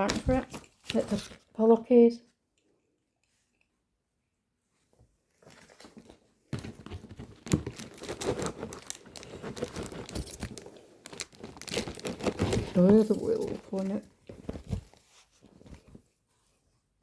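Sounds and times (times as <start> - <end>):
packaging crinkling and rustling: 0.0 - 1.6, 5.4 - 16.0.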